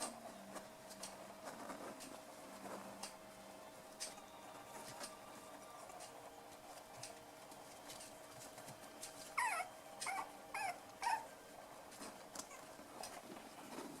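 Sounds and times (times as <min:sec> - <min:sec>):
puppy yelping: 0:09.4 - 0:11.3.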